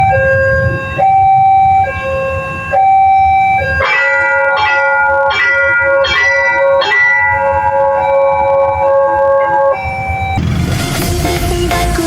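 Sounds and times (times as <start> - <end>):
two-tone crossing siren: 0.0 - 10.7
electronic bell chime: 3.8 - 10.4.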